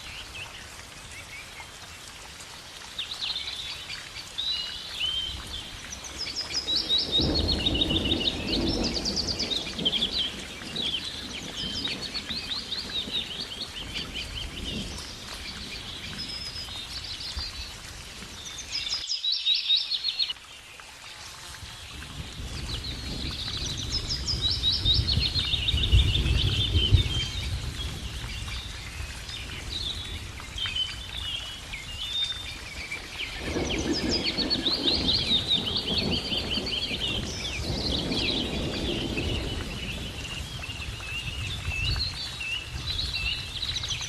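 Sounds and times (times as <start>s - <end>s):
small birds chirping: 2.8s - 44.0s.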